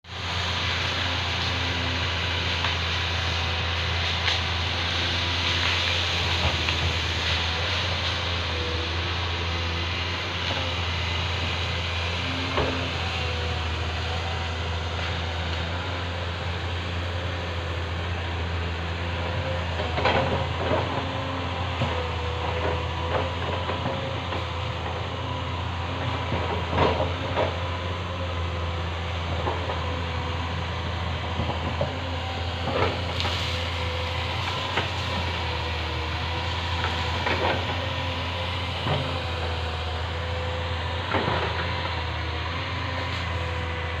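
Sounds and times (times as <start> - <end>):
excavator diesel engine under load: 0.0 - 44.0
excavator knocks and clanks: 12.3 - 13.4, 19.7 - 25.2, 25.9 - 28.0, 29.2 - 30.1, 31.2 - 43.9.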